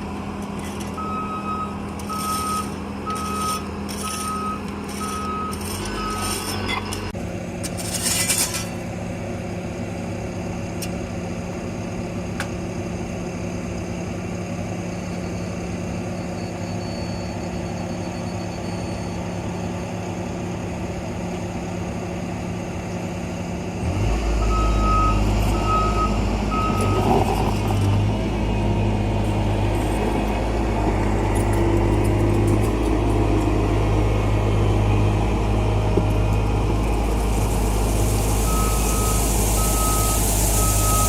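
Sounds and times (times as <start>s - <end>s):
diesel engine running: 0.0s - 8.0s, 8.6s - 41.0s
reversing alarm beeping: 1.0s - 7.1s, 24.3s - 27.1s, 37.6s - 41.0s.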